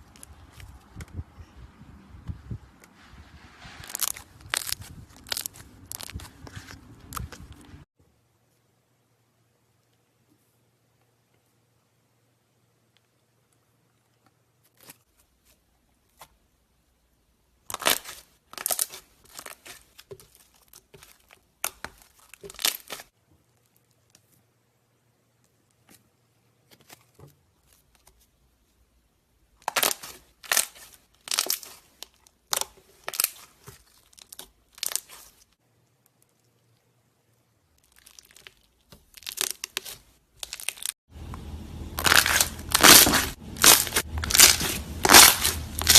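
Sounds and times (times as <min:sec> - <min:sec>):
slime crackling and popping: 0:03.8 - 0:07.7, 0:17.7 - 0:23.1, 0:29.6 - 0:35.4, 0:37.8 - 0:41.0, 0:42.0 - 0:45.9.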